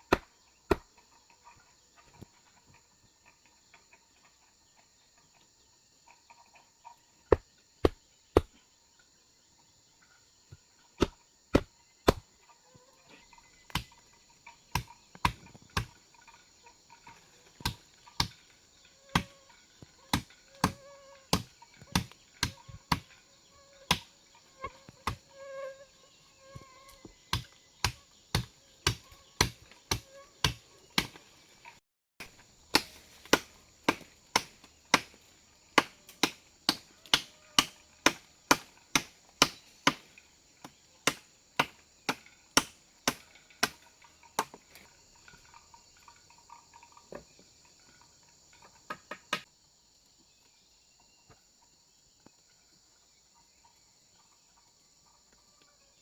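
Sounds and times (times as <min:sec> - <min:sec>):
forest insects droning: 0:00.0 - 0:56.0
sharp chopping strikes: 0:00.1 - 0:00.8, 0:11.0 - 0:12.2, 0:27.3 - 0:31.2, 0:32.2 - 0:35.2.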